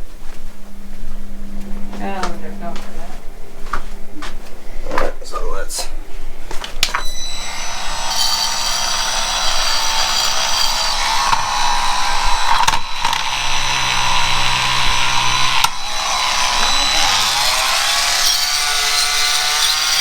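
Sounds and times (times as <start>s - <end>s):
deeper hum: 0.0s - 19.4s
shop vac sucking debris: 7.0s - 20.0s.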